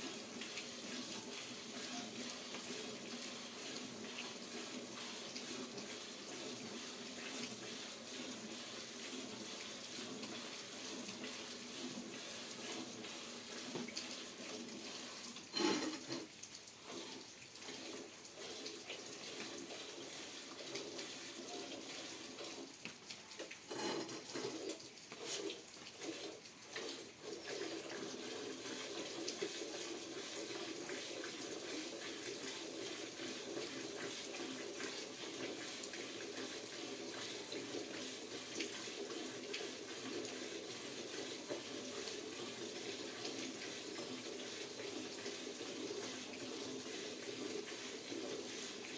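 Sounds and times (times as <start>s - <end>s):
water running in a stream: 0.0s - 48.9s
clattering handling noises: 15.5s - 16.3s, 23.7s - 24.6s.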